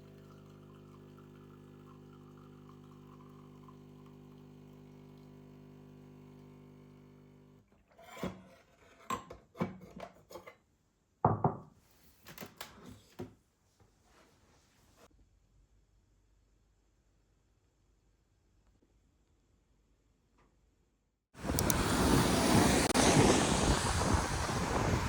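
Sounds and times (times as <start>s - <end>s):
appliance hum: 0.0s - 7.8s
kitchenware knocking and clattering: 11.3s - 11.7s.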